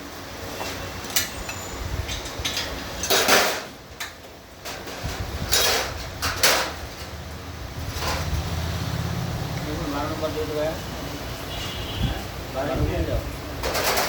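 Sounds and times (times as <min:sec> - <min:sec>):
metallic clanks and scrapes: 0:00.6 - 0:07.1, 0:07.9 - 0:08.5.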